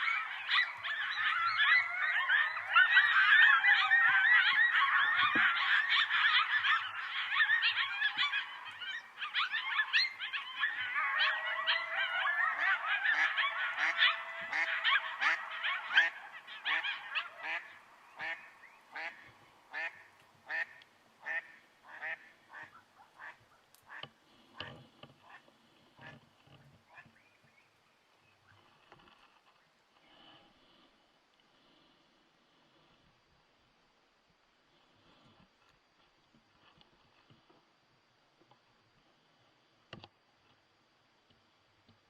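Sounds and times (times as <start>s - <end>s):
coyotes howling and yipping: 0.0s - 27.7s.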